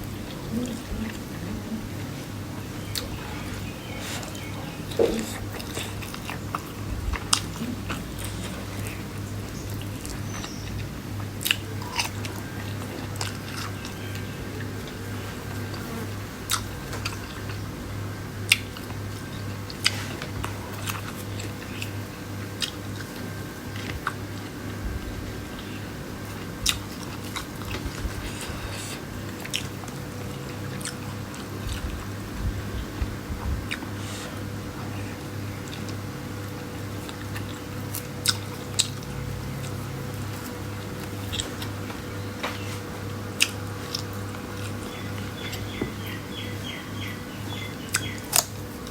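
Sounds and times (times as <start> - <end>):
low steady hum: 0.0 - 48.9
person chewing food: 2.8 - 14.2, 18.5 - 24.5, 26.3 - 32.2, 37.0 - 46.7.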